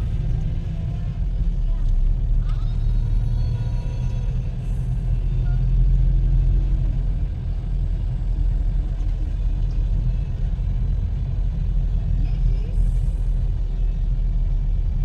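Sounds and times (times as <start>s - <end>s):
vehicle engine and road noise: 0.0s - 15.0s.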